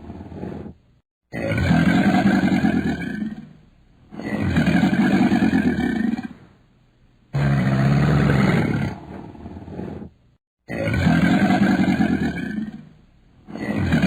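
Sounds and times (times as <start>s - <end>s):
crocodile bellowing: 1.3s - 6.4s, 7.4s - 10.1s, 10.7s - 12.9s, 13.5s - 14.0s.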